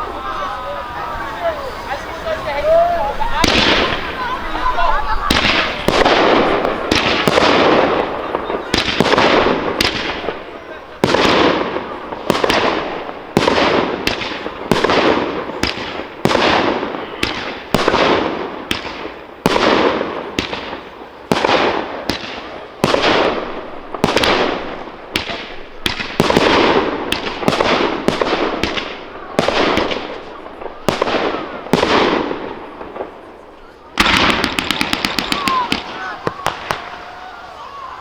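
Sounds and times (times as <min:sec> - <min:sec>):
fireworks bursting with bangs: 0:00.0 - 0:38.0.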